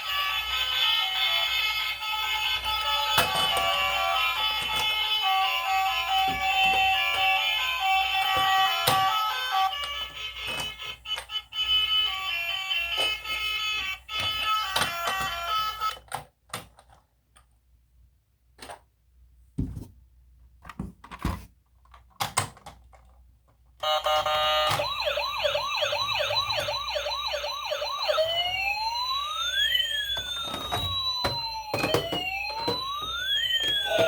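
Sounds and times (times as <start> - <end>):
electronic siren yelping and wailing: 23.8 - 34.0.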